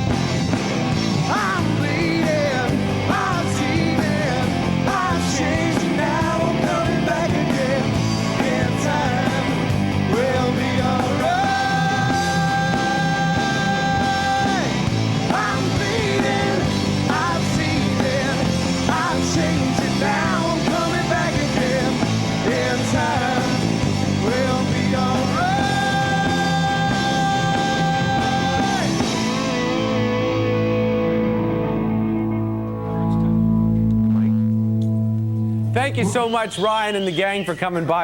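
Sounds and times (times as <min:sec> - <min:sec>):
rock band playing live: 0:00.0 - 0:36.3
lead vocal singing: 0:01.1 - 0:30.9.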